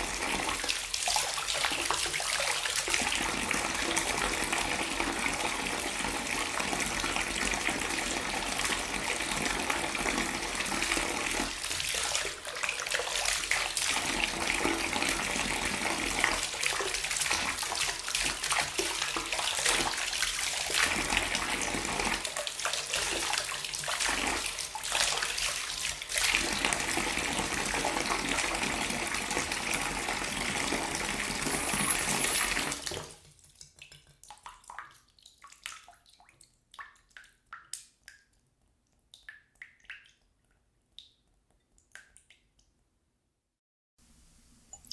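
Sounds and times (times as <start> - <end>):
water pouring and splashing: 10.5 - 28.8
faint water drips: 33.0 - 42.8.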